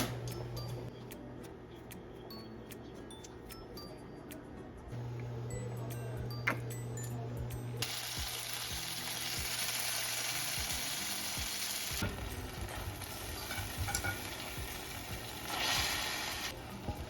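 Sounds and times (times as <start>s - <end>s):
food sizzling in frying pan: 7.8s - 16.5s.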